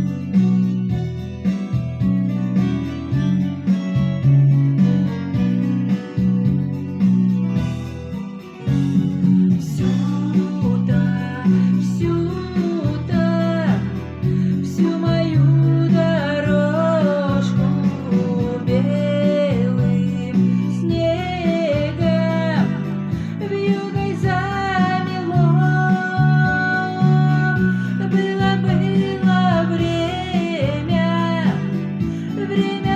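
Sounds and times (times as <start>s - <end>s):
plucked guitar: 0.0s - 32.9s
person singing: 9.6s - 32.9s.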